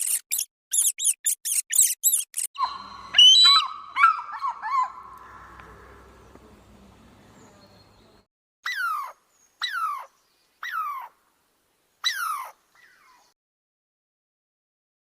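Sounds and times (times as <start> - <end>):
animal crying high and falling: 1.7 - 6.1, 8.7 - 11.1, 12.0 - 13.1.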